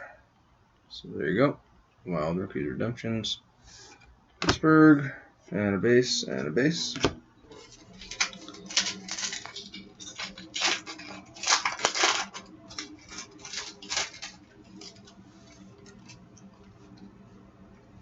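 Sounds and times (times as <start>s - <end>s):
cards being handled: 6.9s - 16.6s
wrapper crinkling and tearing: 7.5s - 16.3s.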